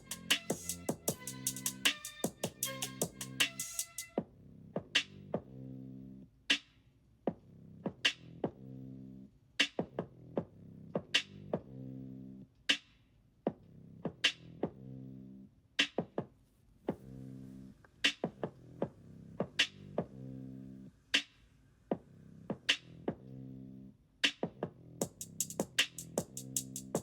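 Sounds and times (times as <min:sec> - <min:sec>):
drum-machine hit: 0:00.0 - 0:04.1
mellow electronic beat: 0:00.0 - 0:04.2, 0:25.0 - 0:27.0.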